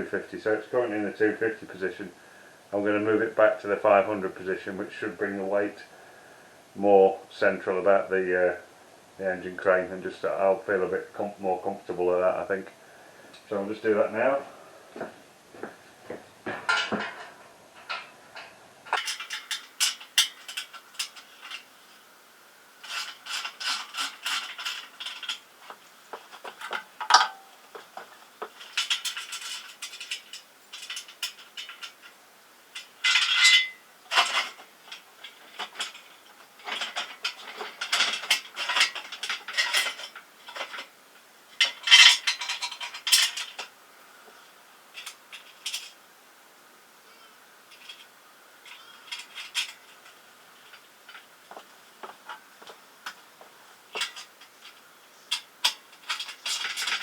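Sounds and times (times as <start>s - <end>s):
metal clinking and scraping: 16.5s - 46.0s, 47.1s - 57.0s.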